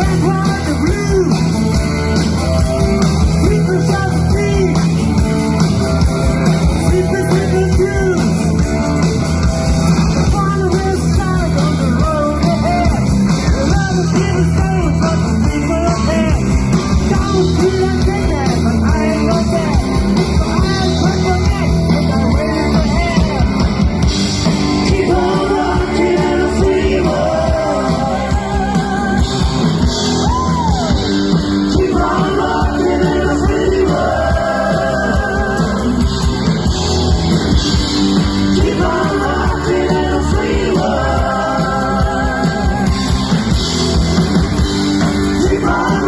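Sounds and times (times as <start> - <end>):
live rock band playing: 0.0 - 46.0
person singing: 45.3 - 46.0.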